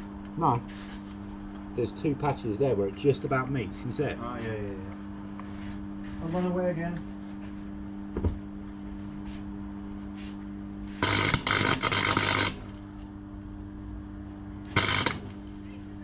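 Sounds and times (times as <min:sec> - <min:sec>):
electrical hum: 0:00.0 - 0:16.0
welding arc crackling: 0:10.9 - 0:13.1, 0:14.7 - 0:15.8.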